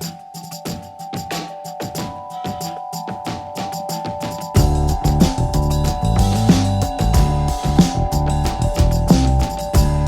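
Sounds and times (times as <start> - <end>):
music with steady beat: 0.0 - 10.0
deep bass line: 4.6 - 10.0.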